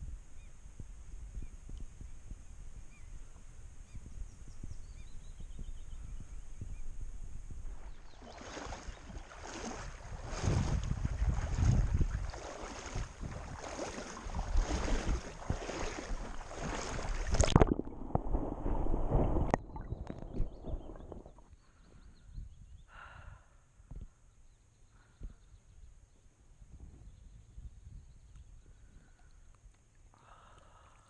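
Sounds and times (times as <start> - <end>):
wind on microphone: 0.0 - 24.2, 26.6 - 29.5
paddle strokes splashing water: 7.7 - 21.5.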